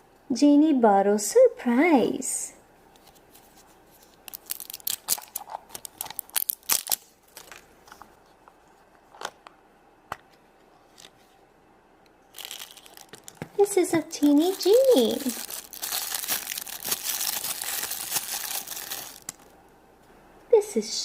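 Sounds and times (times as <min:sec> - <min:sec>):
packaging crinkling and tearing: 0:04.0 - 0:07.6, 0:12.3 - 0:19.5.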